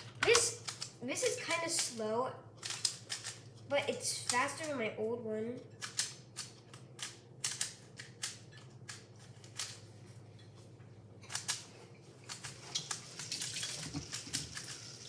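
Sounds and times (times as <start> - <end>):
plastic puzzle cube clicking: 0.2 - 0.9, 2.6 - 3.4, 5.8 - 9.8, 11.3 - 11.6.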